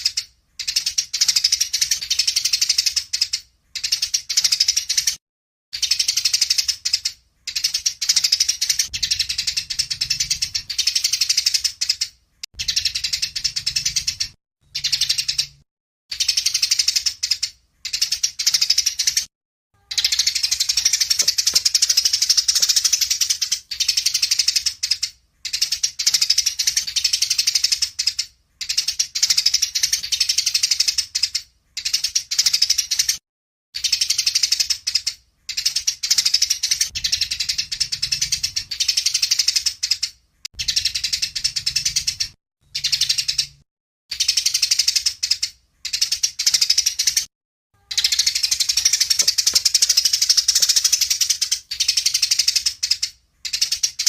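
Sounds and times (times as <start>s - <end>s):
songbird chattering song: 0.0s - 5.2s, 5.8s - 33.2s, 33.8s - 54.0s.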